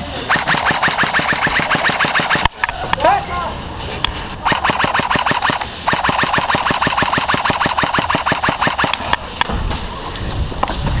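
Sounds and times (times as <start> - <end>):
airsoft gun firing: 0.3 - 2.6, 4.4 - 9.2.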